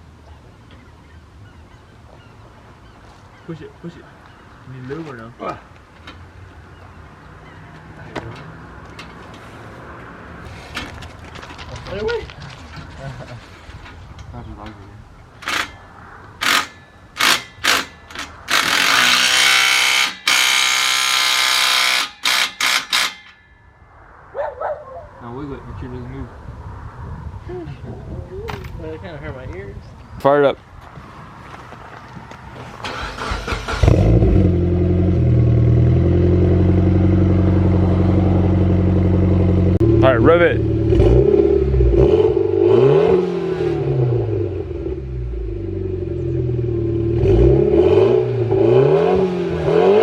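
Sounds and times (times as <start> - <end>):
power tool driving bolts: 15.4 - 15.8, 16.4 - 23.4
car engine starting and idling: 32.6 - 42.4.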